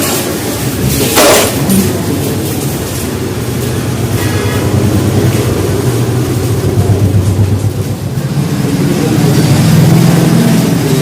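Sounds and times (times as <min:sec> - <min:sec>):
small petrol engine idling: 0:02.3 - 0:11.0.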